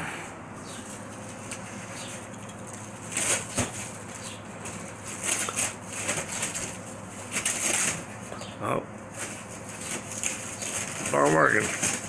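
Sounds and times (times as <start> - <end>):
plastic shrink wrap crinkling: 9.0 - 12.0.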